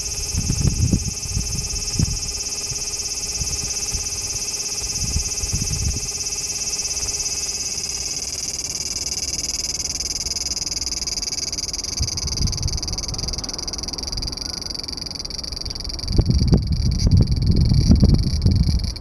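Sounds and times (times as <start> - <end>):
cicada buzzing drone: 0.0 - 19.0.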